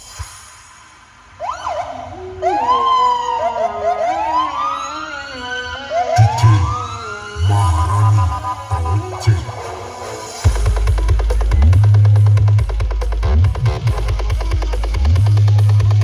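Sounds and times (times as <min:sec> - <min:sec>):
siren-like electronic sweeps: 0:01.4 - 0:11.7
heavy bass beats: 0:07.4 - 0:16.0.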